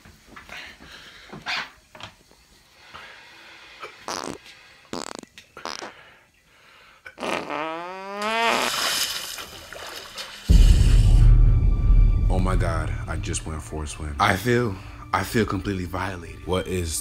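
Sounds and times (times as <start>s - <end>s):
farts: 4.0s - 6.0s, 7.1s - 9.0s.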